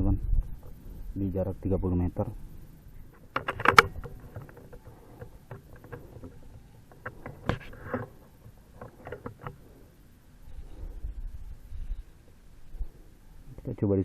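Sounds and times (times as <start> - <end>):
small clicks and light knocks: 3.1 - 9.9.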